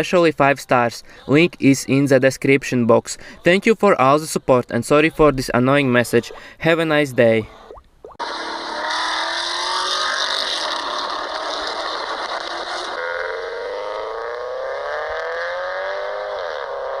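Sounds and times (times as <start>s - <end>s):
car engine accelerating: 8.2s - 17.0s.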